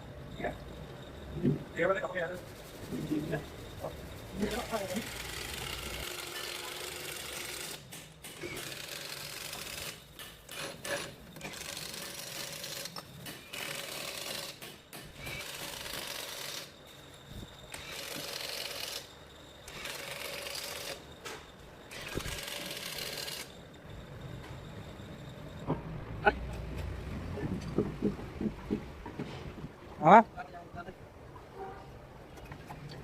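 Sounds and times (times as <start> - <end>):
power tool bursts: 4.9 - 16.8, 17.7 - 19.1, 19.7 - 21.0, 21.9 - 23.6.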